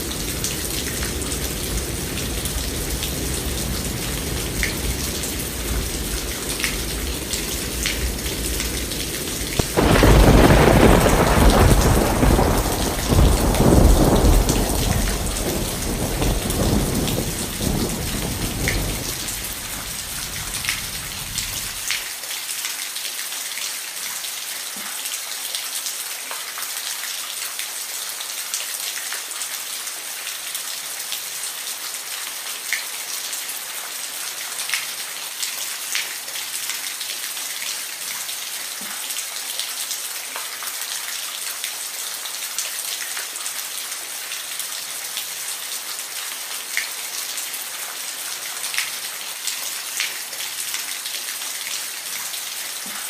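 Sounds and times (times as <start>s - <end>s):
thunder rumbling: 0.0s - 21.9s
steady rain: 0.0s - 53.0s.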